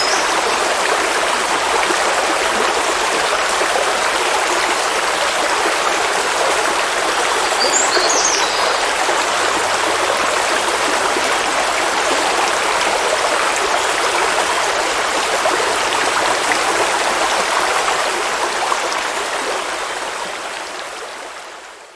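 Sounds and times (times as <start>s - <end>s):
river water rushing: 0.0s - 21.8s.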